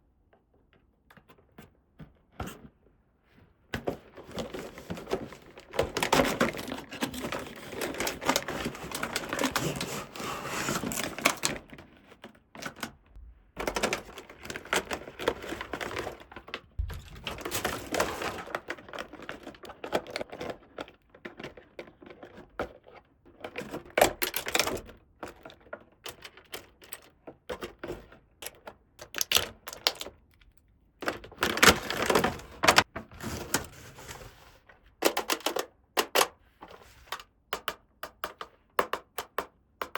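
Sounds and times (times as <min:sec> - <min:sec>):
plastic toy pieces clicking: 0:28.5 - 0:30.6.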